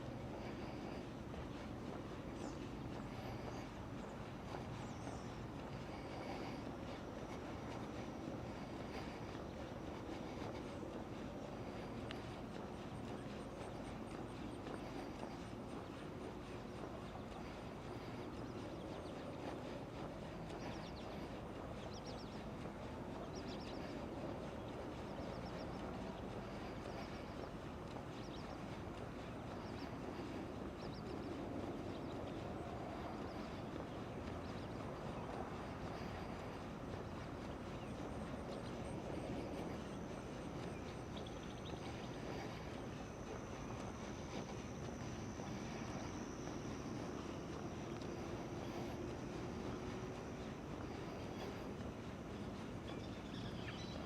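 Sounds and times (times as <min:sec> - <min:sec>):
faint bird chirps: 0:00.0 - 0:54.0
low background noise: 0:00.0 - 0:54.0.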